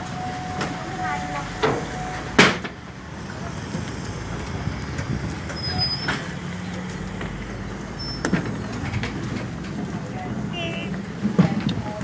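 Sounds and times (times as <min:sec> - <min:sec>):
train carriage rumble: 0:00.0 - 0:12.0.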